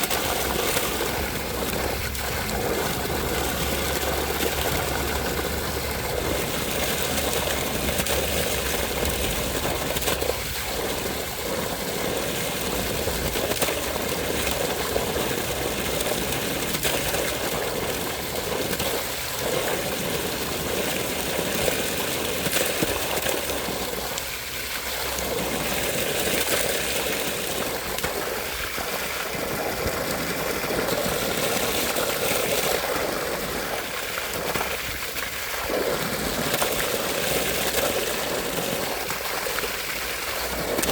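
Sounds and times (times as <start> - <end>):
water rushing: 0.0 - 40.9.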